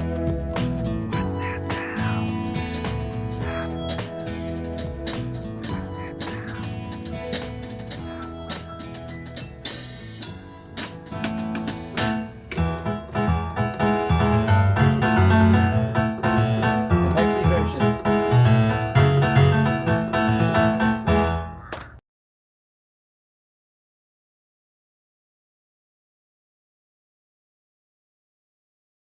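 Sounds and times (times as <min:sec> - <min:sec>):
instrumental rock music: 0:00.0 - 0:21.4.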